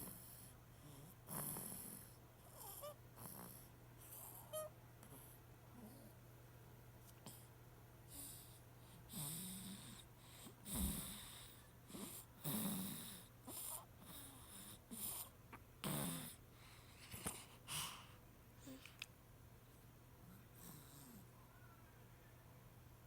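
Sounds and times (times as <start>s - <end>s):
baby snoring: 0.0s - 6.1s, 8.1s - 18.0s
faint steady hum: 0.0s - 23.0s.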